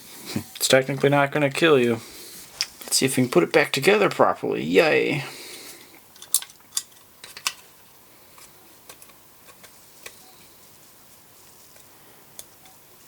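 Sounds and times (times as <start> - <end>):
plastic parts clicking and tapping: 6.2 - 7.7, 8.4 - 10.2.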